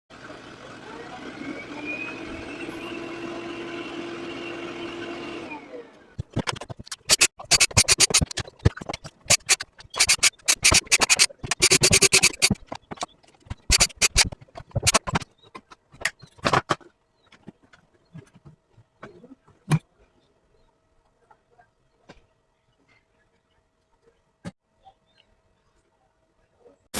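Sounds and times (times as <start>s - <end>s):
plastic parts clicking and knocking: 6.2s - 20.0s.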